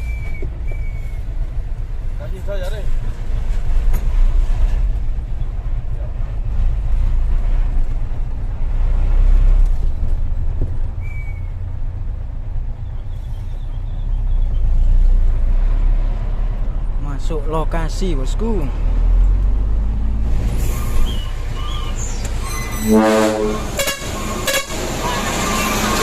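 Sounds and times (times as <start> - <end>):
diesel truck engine droning: 0.0 - 26.0
brief high squeal: 20.6 - 23.0.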